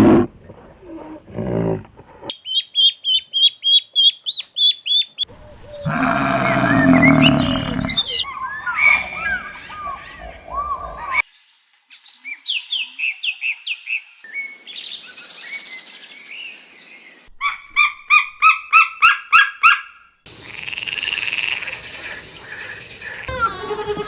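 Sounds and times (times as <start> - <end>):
falling animal chirps: 5.6 - 8.2
buzzy animal call: 5.7 - 8.2
repeated pitched animal calls: 5.7 - 10.1.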